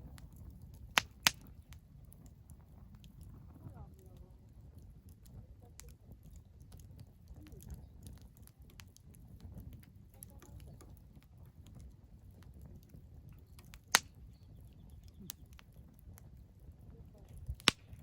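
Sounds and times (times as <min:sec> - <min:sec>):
firewood crackling: 0:00.0 - 0:18.0
low rumble of fire: 0:00.0 - 0:18.0
loud sharp pop: 0:17.6 - 0:18.0.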